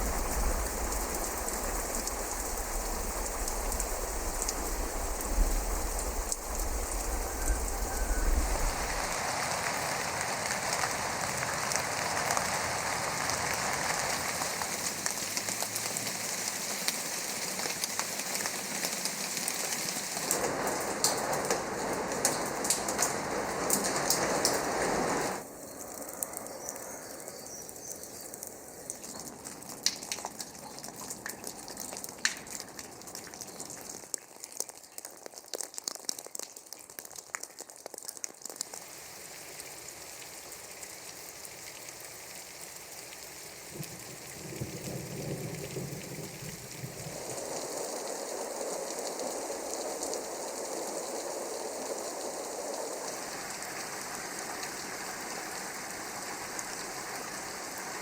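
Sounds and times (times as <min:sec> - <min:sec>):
raindrops clicking: 0:00.0 - 0:24.7, 0:25.3 - 0:39.0
rain falling: 0:00.0 - 0:58.0.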